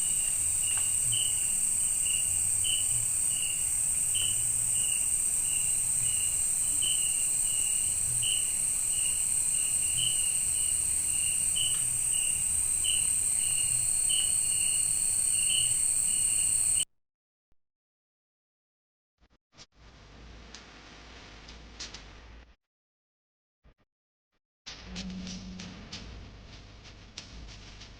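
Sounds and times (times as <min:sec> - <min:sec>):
crickets droning and chirping: 0:00.0 - 0:16.8.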